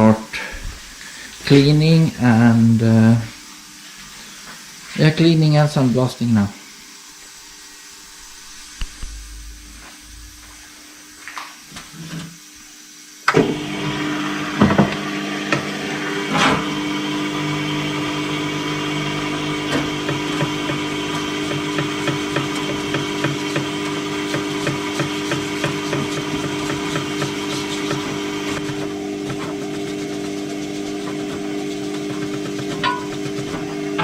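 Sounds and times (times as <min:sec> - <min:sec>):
motor-driven machine running: 0:13.3 - 0:34.0.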